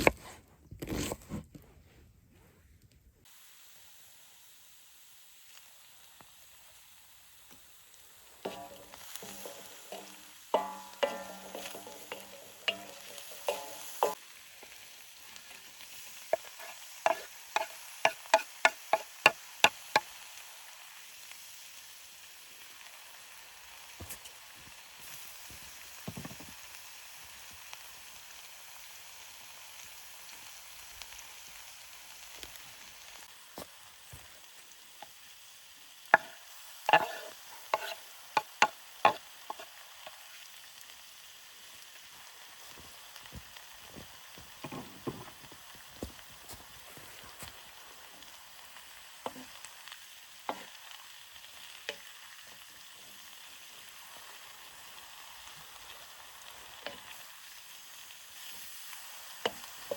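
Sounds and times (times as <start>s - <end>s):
chicken sizzling in pan: 3.2s - 59.9s
metal utensil striking pan: 8.4s - 14.2s, 16.4s - 20.0s, 36.2s - 39.6s.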